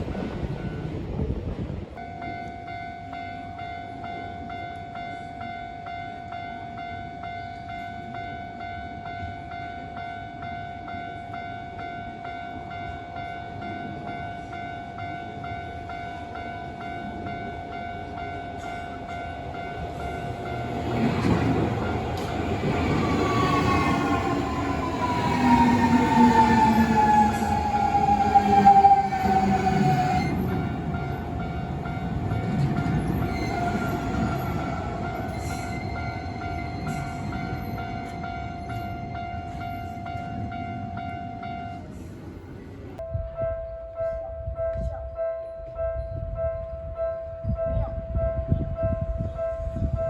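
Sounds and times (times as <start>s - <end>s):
train rail noise: 0.0s - 50.0s
level crossing warning bell: 2.0s - 42.0s.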